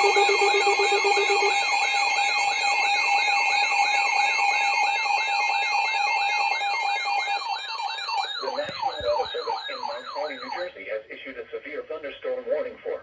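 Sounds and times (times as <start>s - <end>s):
warbling high tone: 0.0s - 2.5s, 5.8s - 10.7s
steady beeping tones: 0.0s - 10.7s
yelping siren tone: 0.0s - 10.7s.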